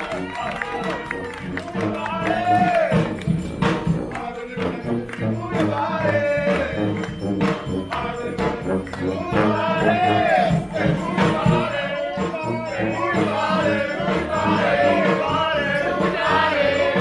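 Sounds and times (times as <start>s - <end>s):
brass street band playing: 0.0s - 17.0s.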